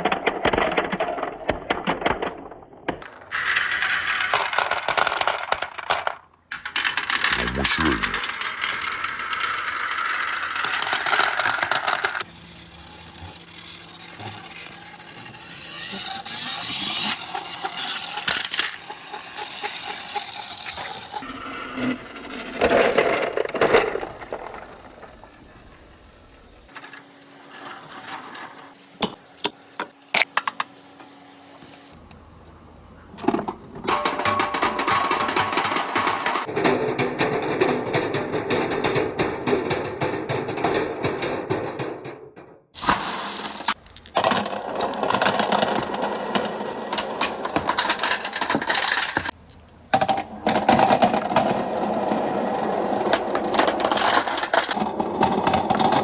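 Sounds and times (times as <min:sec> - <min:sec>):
marbles rattling down plastic run: 0:03.3 - 0:21.2, 0:42.8 - 0:49.3.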